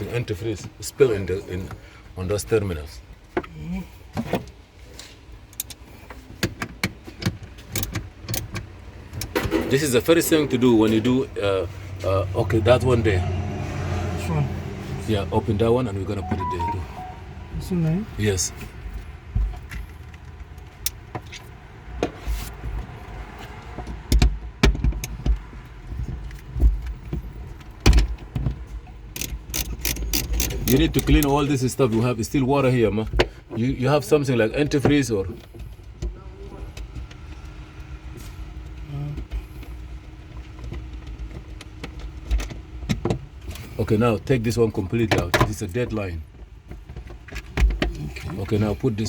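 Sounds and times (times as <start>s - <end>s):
tools clicking and knocking: 6.4s - 9.6s, 27.9s - 31.4s
clicks and knocks of hand tools: 29.2s - 31.3s.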